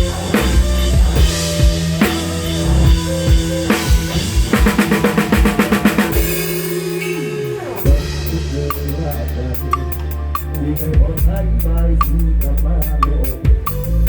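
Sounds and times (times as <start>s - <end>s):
bass drum and snare hits: 0.0s - 6.9s
fast drum fill: 0.0s - 14.0s
live rock band playing: 0.0s - 14.0s.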